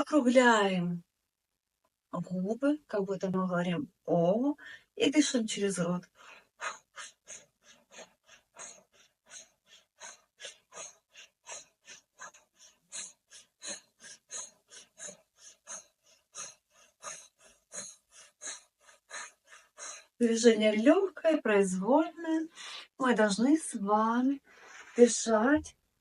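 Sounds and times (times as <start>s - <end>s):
rapid rhythmic breathing: 5.8s - 21.0s.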